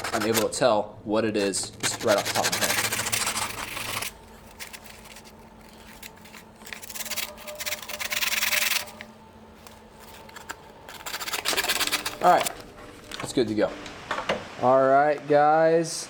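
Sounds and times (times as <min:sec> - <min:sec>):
sandpaper rubbing on metal: 0:00.0 - 0:00.6, 0:01.3 - 0:09.0, 0:10.0 - 0:12.5.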